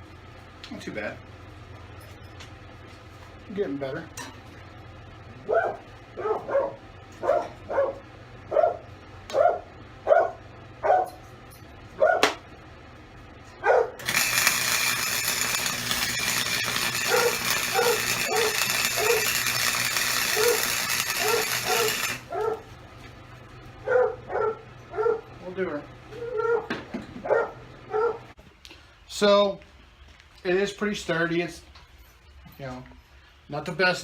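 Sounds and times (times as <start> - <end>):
dog barking: 5.4 - 11.2, 12.0 - 12.4, 13.6 - 14.0, 21.2 - 22.7, 23.8 - 25.3, 26.2 - 28.3
loud steady hissing: 14.0 - 22.3.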